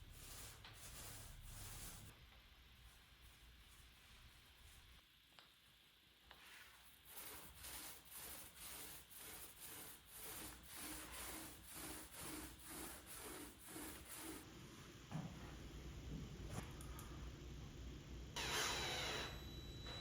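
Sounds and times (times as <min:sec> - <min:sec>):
hand sanding wood: 0:00.0 - 0:02.1, 0:07.0 - 0:14.5.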